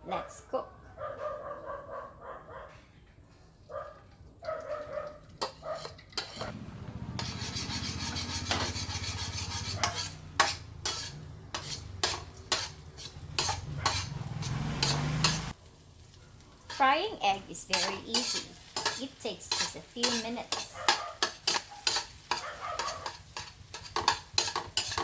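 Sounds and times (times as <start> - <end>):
utensil scraping a pan: 5.4 - 15.6, 16.6 - 25.0
egg sizzling in oil: 7.1 - 25.0.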